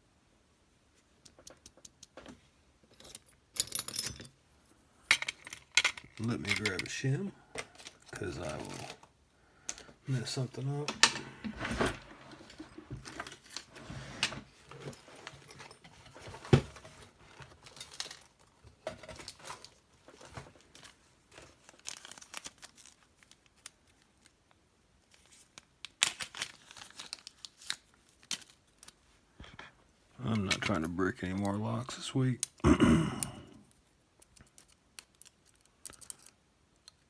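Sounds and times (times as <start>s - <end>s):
hands rummaging through tools: 5.0s - 23.7s.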